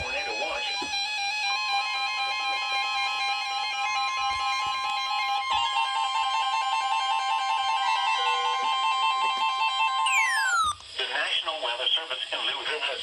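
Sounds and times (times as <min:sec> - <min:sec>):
alarm-like tones: 0:10.1 - 0:10.8
repeating electronic keyboard figure: 0:10.1 - 0:10.8.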